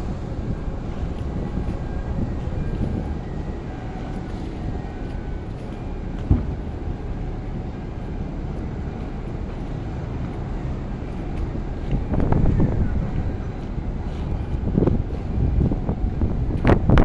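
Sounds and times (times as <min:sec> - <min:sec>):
low rumbling noise: 0:00.0 - 0:17.0.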